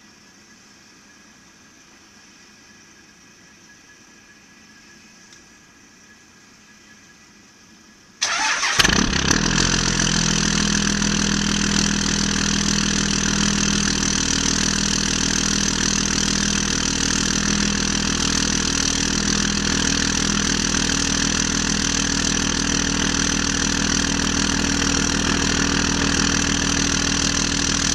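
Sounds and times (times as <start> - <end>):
diesel engine cranking: 8.2 - 27.9
diesel engine idling: 8.2 - 27.9.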